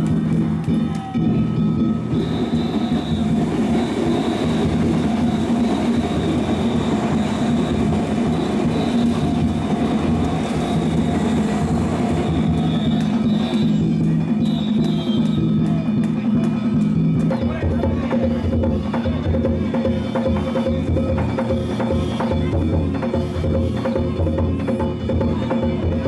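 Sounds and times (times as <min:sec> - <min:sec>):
train wheels rushing on rails: 0:02.0 - 0:15.8.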